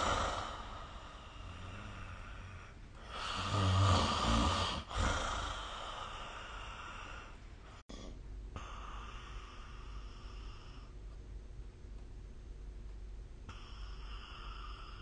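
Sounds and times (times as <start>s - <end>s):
person snoring: 0.0s - 7.4s
person breathing: 0.0s - 11.0s.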